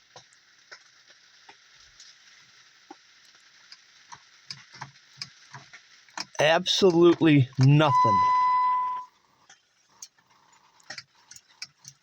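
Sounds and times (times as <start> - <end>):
steady hiss: 0.0 - 12.0
faint irregular clicking: 9.4 - 12.0.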